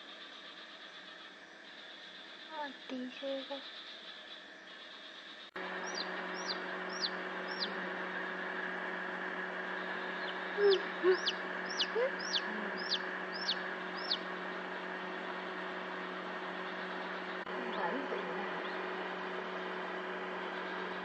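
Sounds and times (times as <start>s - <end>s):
steady hum: 0.0s - 21.0s
chick peeping: 5.8s - 7.9s, 10.1s - 14.3s.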